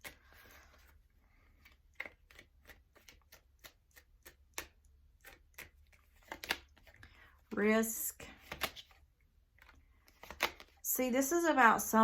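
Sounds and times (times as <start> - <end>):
cards shuffled and flicked: 0.0 - 7.6, 8.3 - 10.8.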